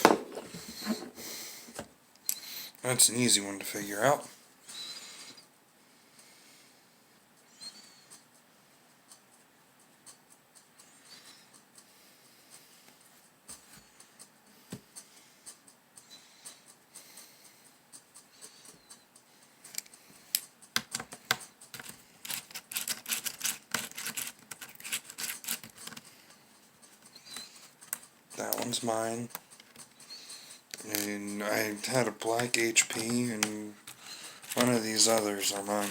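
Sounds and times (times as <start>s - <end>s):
laptop parts clicking and scraping: 0.0s - 1.9s, 19.6s - 35.9s.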